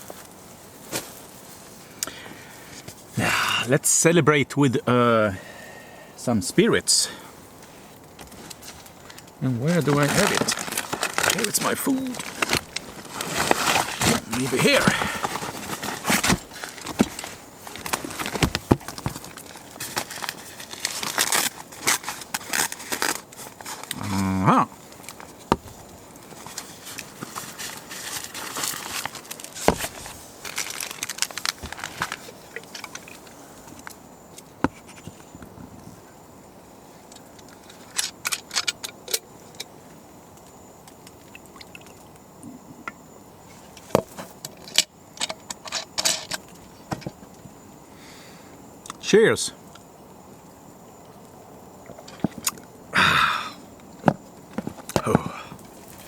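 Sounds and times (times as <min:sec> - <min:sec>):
rummaging through gear: 0:08.3 - 0:24.0, 0:25.0 - 0:33.9.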